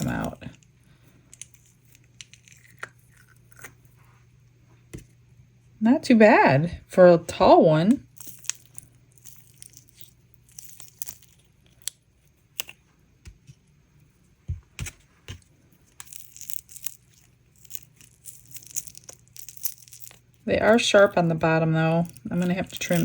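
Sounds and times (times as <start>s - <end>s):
silicone rustling and peeling: 8.1s - 23.0s.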